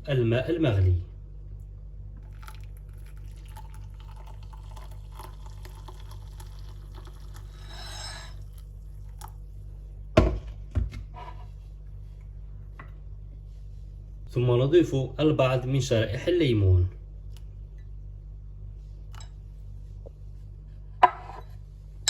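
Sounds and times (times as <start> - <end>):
steady low hum: 0.0 - 22.0
water pouring into a cup: 2.2 - 9.5.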